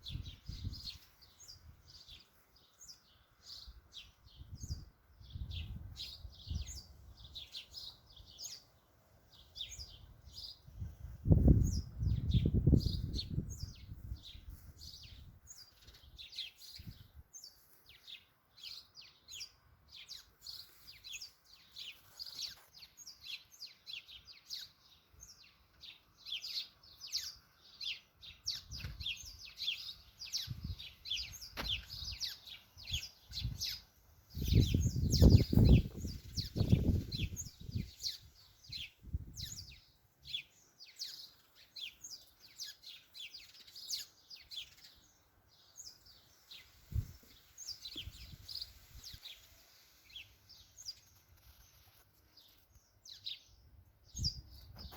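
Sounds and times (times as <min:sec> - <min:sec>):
wind gusting on microphone: 0:00.0 - 0:01.0, 0:04.3 - 0:07.4, 0:09.8 - 0:15.5, 0:30.4 - 0:32.2, 0:32.8 - 0:39.8, 0:46.8 - 0:49.4, 0:54.1 - 0:54.9
birds chirping and singing: 0:00.0 - 0:54.9.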